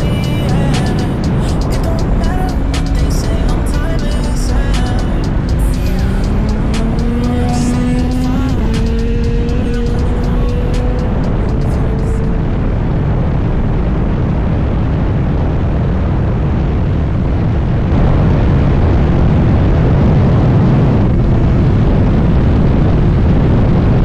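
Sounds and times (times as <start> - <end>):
motorcycle engine rumbling: 0.0 - 12.6.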